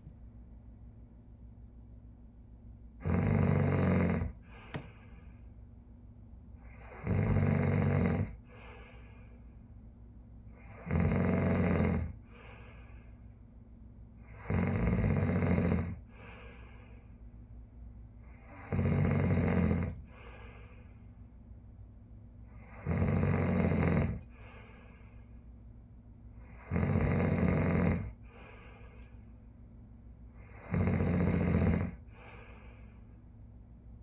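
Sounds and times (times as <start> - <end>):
recorded snoring: 3.0 - 5.0, 6.6 - 8.8, 10.6 - 12.6, 14.2 - 16.5, 18.3 - 20.6, 22.5 - 25.0, 26.4 - 28.5, 30.4 - 32.7.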